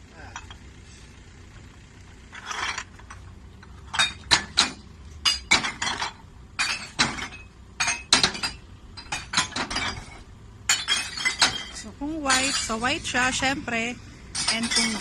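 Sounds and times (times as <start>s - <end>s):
glass bottles clinking into bottle bank: 3.9s - 13.0s, 14.3s - 15.0s.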